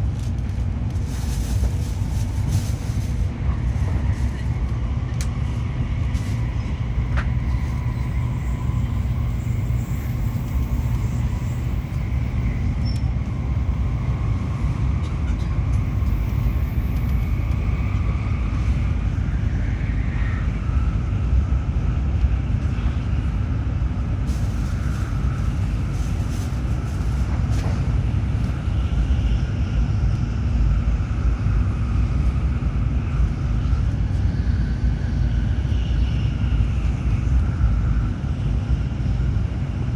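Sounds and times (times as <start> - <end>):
train interior deep rumble: 0.0 - 39.9
faint whining tones: 5.2 - 21.0.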